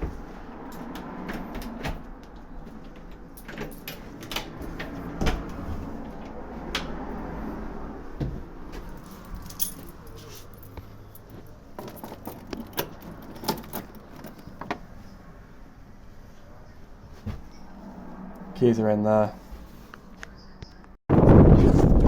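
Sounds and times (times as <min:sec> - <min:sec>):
light metallic clinks: 0:09.0 - 0:14.6.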